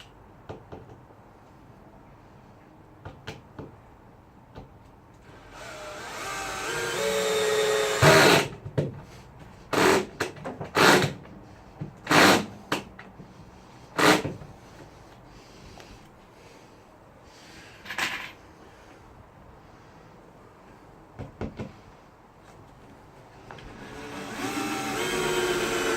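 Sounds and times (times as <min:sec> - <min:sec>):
power drill driving screws: 0:05.3 - 0:08.5, 0:09.7 - 0:10.1, 0:12.1 - 0:12.6, 0:14.0 - 0:14.3, 0:23.6 - 0:25.9.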